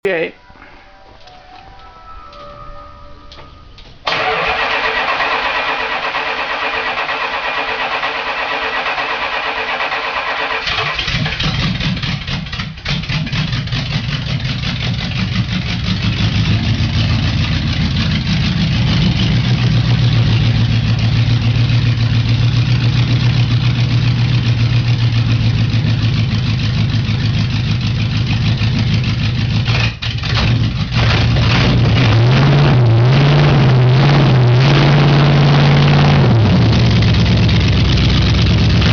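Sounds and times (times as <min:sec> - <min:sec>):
starter motor cranking: 0:04.1 - 0:11.8
loud car engine idling: 0:10.7 - 0:31.4, 0:33.8 - 0:38.9.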